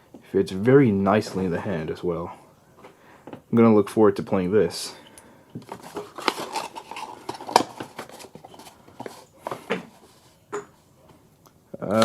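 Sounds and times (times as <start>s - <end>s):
yo-yo packaging clicks and rustles: 5.6s - 10.0s.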